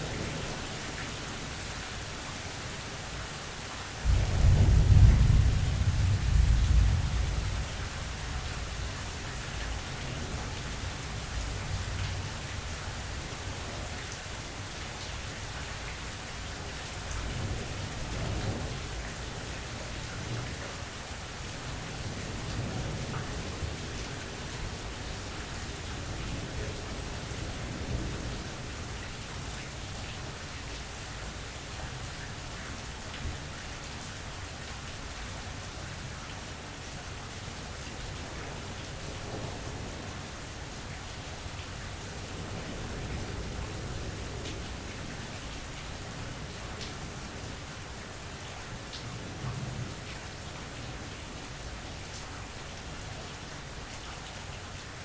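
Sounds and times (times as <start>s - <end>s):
steady rain falling: 0.0s - 55.0s
thunder rumbling: 4.0s - 12.4s.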